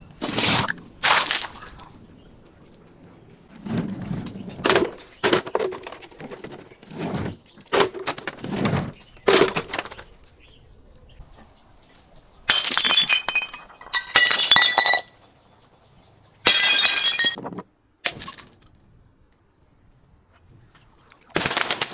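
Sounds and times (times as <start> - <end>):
dull crunching impacts: 0.0 - 10.6
glass shattering: 12.5 - 15.2, 16.4 - 17.4.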